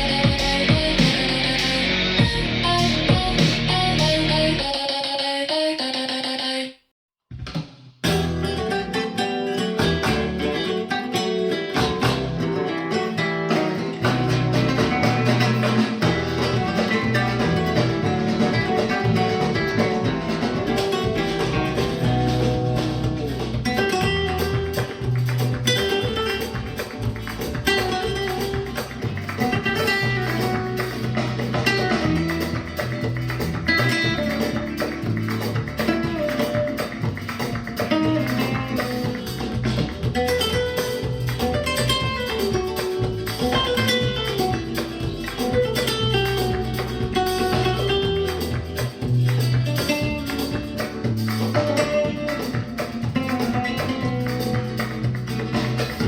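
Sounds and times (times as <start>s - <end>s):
steady bass pulse: 0.0s - 4.6s
flamenco guitar music from speaker: 0.0s - 4.8s, 7.4s - 56.0s.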